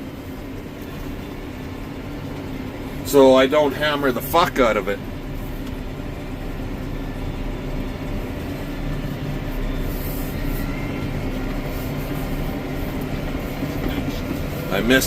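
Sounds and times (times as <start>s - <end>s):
tractor engine droning: 0.0s - 15.0s.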